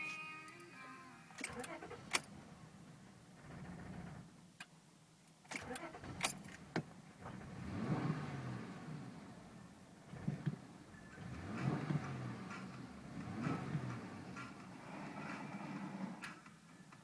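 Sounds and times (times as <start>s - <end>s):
car engine rumbling unevenly: 0.0s - 17.0s
engine knocks: 6.0s - 16.4s.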